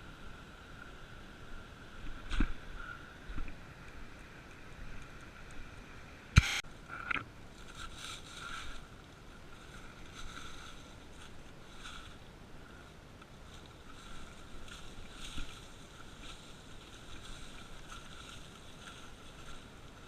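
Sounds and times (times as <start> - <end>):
creek water running: 7.3 - 20.0.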